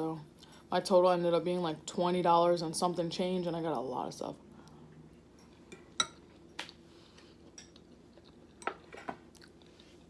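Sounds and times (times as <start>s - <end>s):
cutlery clinking against a bowl: 5.4s - 6.3s, 7.5s - 7.8s.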